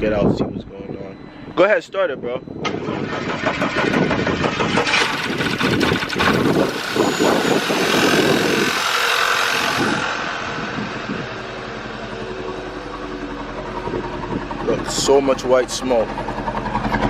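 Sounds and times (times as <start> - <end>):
car engine idling unevenly: 10.3 - 17.0.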